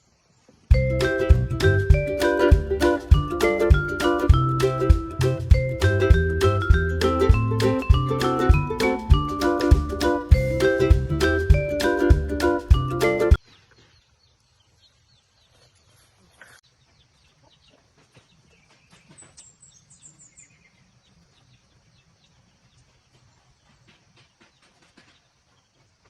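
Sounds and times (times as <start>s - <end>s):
high chirps: 0.7s - 13.4s.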